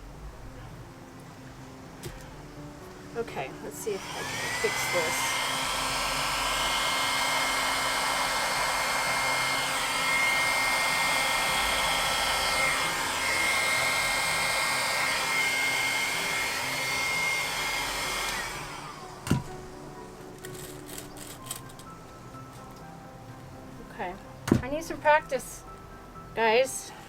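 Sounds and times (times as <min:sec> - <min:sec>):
hair dryer blowing: 0:03.7 - 0:19.6.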